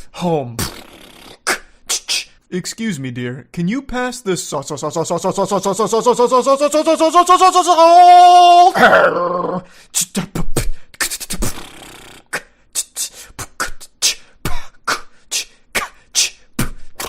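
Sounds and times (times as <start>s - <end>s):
beatboxing mouth percussion: 0.5s - 2.4s, 4.6s - 7.7s, 9.9s - 17.0s
mouth hissing: 0.6s - 2.4s, 11.0s - 13.4s.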